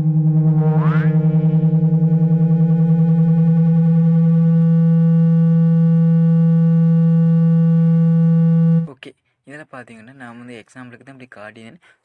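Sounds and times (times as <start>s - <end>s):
low speaker cleaning tone: 0.0s - 8.9s.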